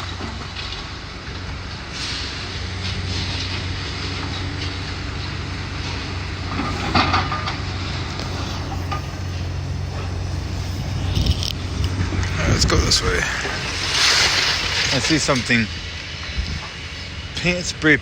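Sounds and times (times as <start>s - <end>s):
clatter of debris: 0.0s - 17.7s
demolition machinery engine hum: 0.0s - 18.0s
crash with metallic screech: 12.4s - 15.8s.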